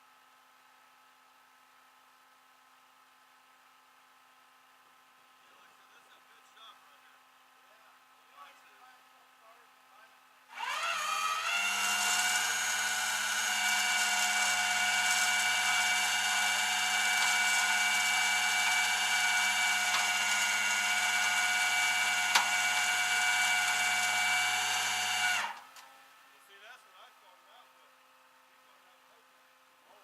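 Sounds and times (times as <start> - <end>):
power tool motor whine: 10.5 - 25.8.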